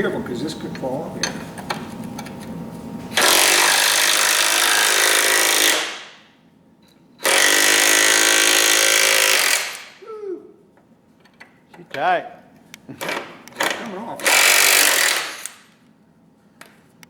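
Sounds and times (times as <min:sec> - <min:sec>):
impact wrench hammering: 0:03.2 - 0:06.3, 0:07.2 - 0:10.0, 0:13.0 - 0:15.7.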